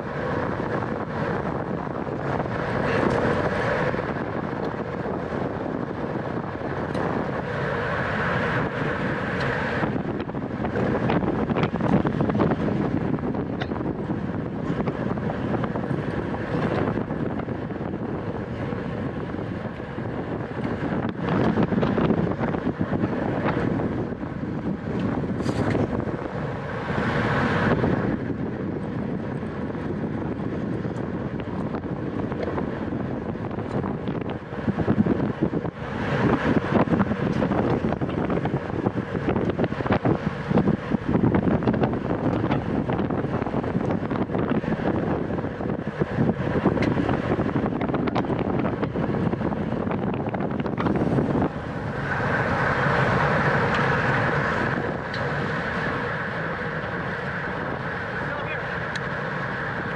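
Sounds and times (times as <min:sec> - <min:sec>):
road and tyre noise: 0:00.0 - 0:59.9
wind rushing over microphone: 0:00.0 - 0:59.9.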